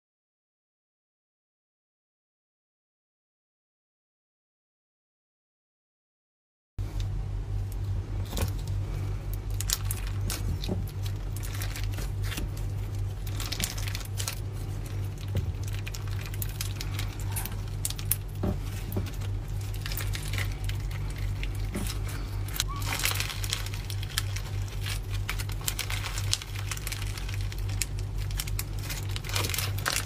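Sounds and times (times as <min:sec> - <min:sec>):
steady low hum: 0:06.8 - 0:30.0
slime crackling and popping: 0:07.7 - 0:30.0.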